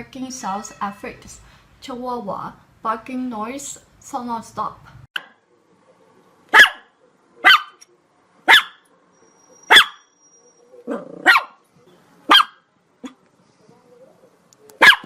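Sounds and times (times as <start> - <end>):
small dog yapping: 6.5 - 7.8, 8.5 - 8.8, 9.7 - 10.0, 10.9 - 11.6, 12.3 - 13.2, 14.8 - 15.0.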